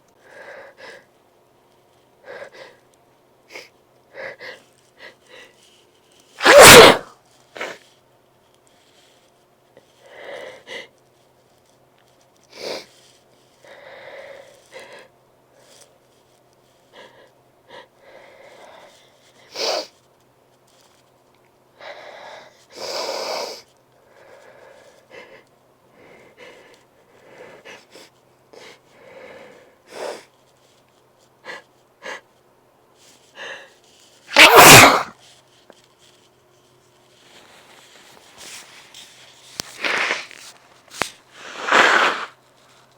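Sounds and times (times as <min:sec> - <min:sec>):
loud sharp sneeze: 0:06.4 - 0:07.8, 0:34.3 - 0:35.2, 0:39.6 - 0:40.3, 0:41.4 - 0:42.4
person sniffing: 0:06.4 - 0:07.8, 0:34.3 - 0:35.1, 0:39.6 - 0:40.4, 0:41.3 - 0:42.4.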